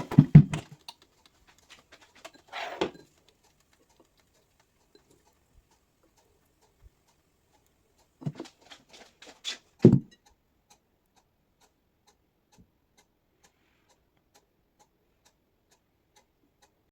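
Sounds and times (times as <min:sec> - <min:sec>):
rustling and clattering: 0:00.0 - 0:05.1, 0:08.2 - 0:10.1
light ticking: 0:00.6 - 0:16.9
dull thump: 0:09.8 - 0:10.1.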